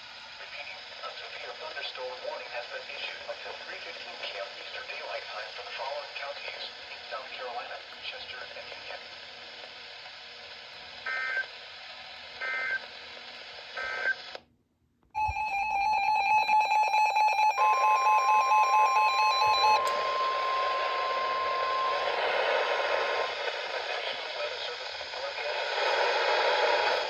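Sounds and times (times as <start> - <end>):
radio hiss: 0.0 - 14.4, 17.6 - 27.0
long steady alert tone: 15.2 - 23.2
two-tone data chirps: 15.2 - 23.3.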